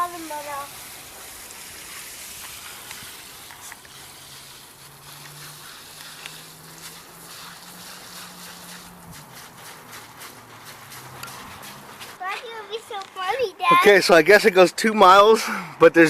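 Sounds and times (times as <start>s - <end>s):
garden hose spraying water: 0.0s - 15.4s.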